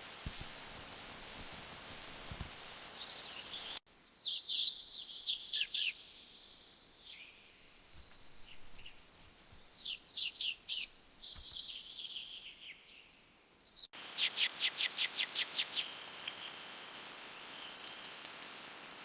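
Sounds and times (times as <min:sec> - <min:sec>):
small birds singing: 0:02.8 - 0:16.6.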